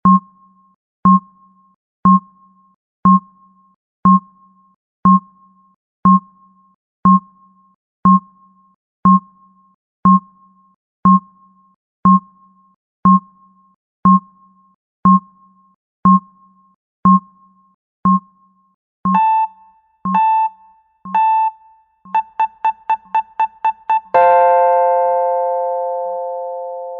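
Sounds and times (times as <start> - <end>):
electronic timer ticks: 19.1 - 24.2
longer electronic beeps: 19.1 - 24.3.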